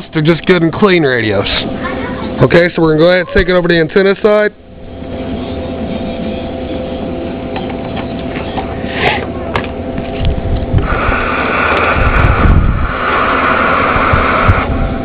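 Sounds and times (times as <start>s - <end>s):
radio static hiss: 10.8s - 14.7s.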